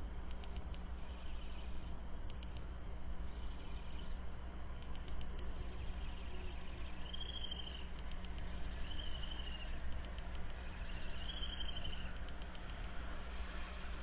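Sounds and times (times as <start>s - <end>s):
steady low hum: 0.0s - 14.0s
high-pitched trilled animal calls: 5.8s - 7.9s, 8.6s - 9.8s, 10.5s - 12.2s.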